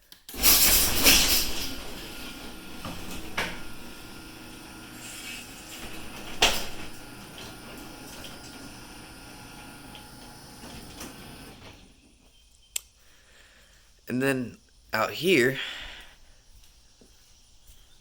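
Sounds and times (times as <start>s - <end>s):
garage door opener running: 0.3s - 12.1s.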